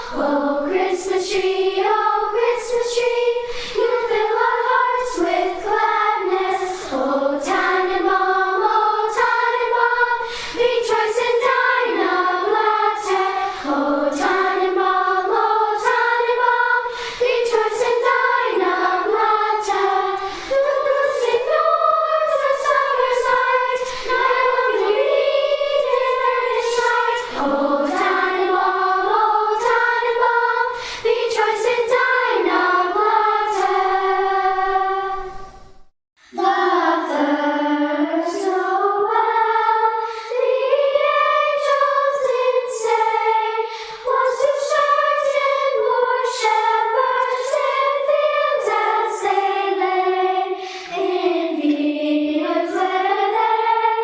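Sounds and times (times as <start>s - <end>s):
youth choir singing: 0.0s - 54.0s.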